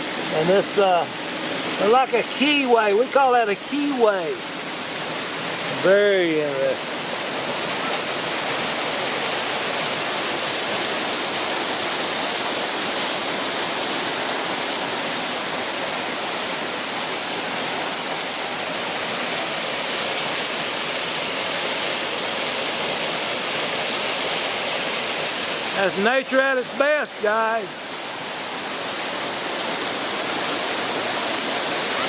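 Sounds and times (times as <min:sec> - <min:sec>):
waterfall rushing: 0:00.0 - 0:32.0.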